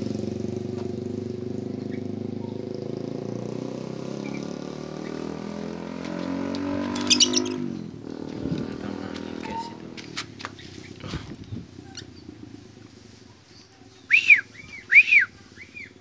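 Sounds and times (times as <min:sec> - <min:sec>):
small engine running: 0:00.0 - 0:16.0
high bird squawks: 0:07.0 - 0:07.7.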